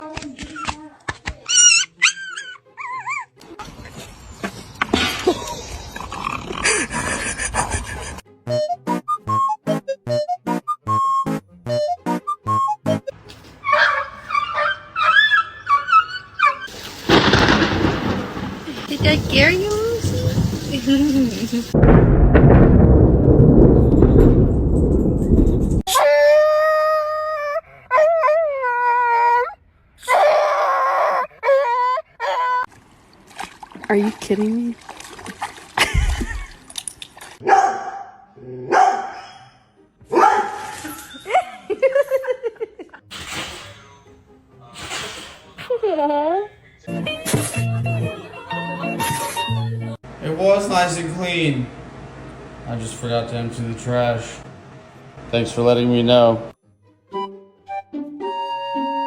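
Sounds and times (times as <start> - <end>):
dog yelping: 1.4 - 3.4, 13.6 - 16.7, 25.9 - 32.7, 37.4 - 41.3
dog whining: 1.5 - 3.4, 13.6 - 16.7, 25.9 - 32.7.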